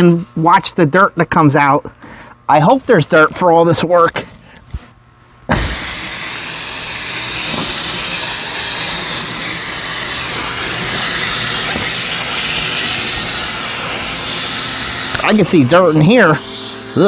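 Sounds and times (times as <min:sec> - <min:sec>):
hose spray hissing on coil: 0:05.5 - 0:17.0.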